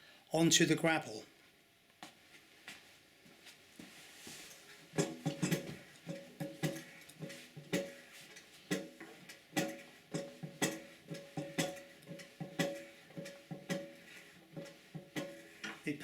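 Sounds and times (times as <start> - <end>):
ticking beat: 9.6 - 16.0.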